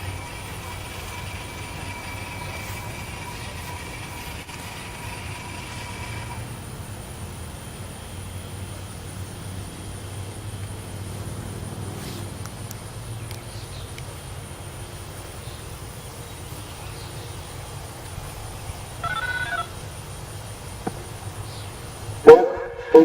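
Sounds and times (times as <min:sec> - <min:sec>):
low vehicle rumble: 0:00.0 - 0:22.9.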